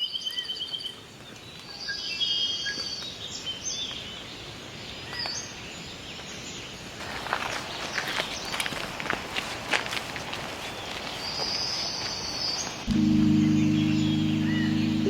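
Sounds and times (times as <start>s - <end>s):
outdoor background hiss: 9.6s - 15.0s.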